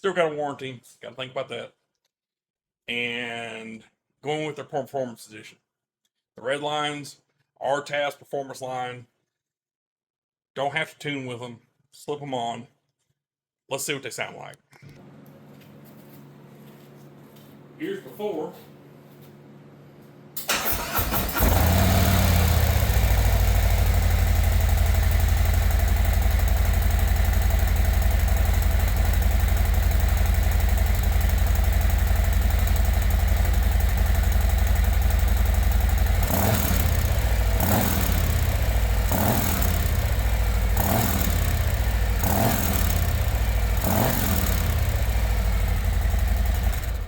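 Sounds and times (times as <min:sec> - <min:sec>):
motorcycle engine revving: 0:20.6 - 0:47.0
motorcycle engine idling: 0:21.6 - 0:47.0.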